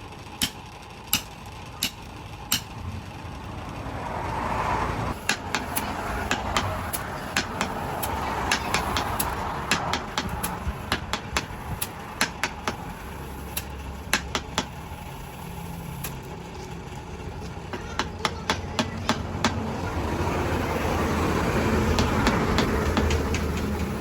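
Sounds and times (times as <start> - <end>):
low machine hum: 0.0 - 24.0
sharp irregular knocks: 5.2 - 12.9, 13.6 - 14.8, 21.7 - 24.0.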